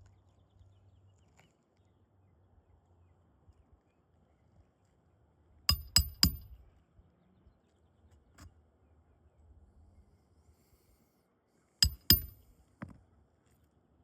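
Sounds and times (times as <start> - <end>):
metal-on-metal strikes: 5.7 - 6.5, 11.8 - 12.4.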